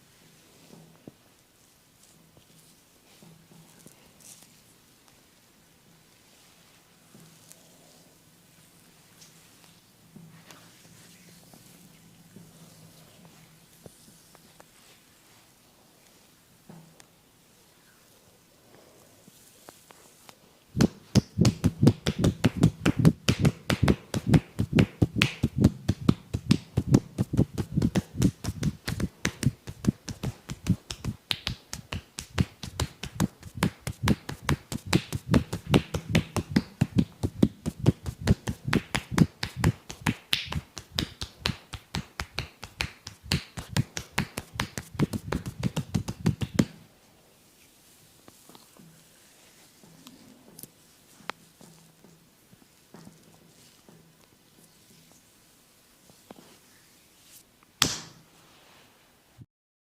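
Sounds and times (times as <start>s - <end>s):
hands slapping body in massage: 20.8s - 46.8s, 57.8s - 58.2s.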